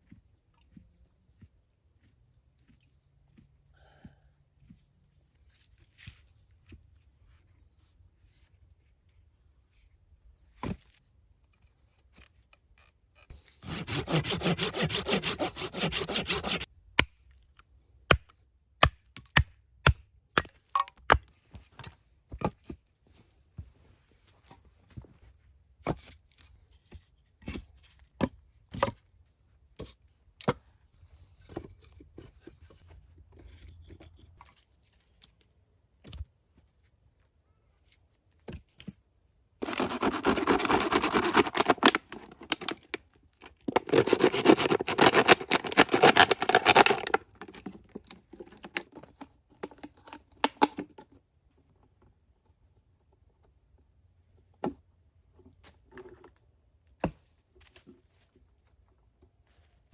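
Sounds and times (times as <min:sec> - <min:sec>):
loud tearing: 0:13.6 - 0:16.7, 0:39.6 - 0:42.9, 0:43.7 - 0:47.2.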